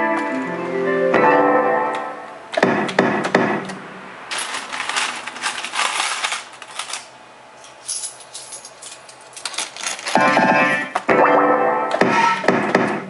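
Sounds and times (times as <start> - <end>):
metal medals clattering: 4.3 - 10.3.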